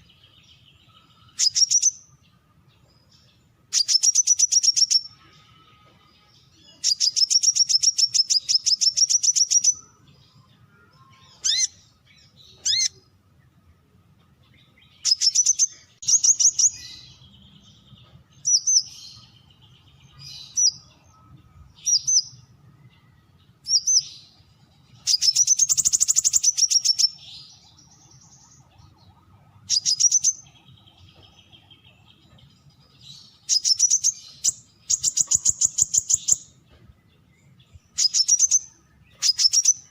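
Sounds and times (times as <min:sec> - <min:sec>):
bird high chipping calls: 0:00.8 - 0:02.4, 0:03.1 - 0:05.3, 0:06.6 - 0:10.0, 0:11.2 - 0:13.2, 0:14.5 - 0:21.0, 0:23.4 - 0:36.7, 0:37.5 - 0:39.9.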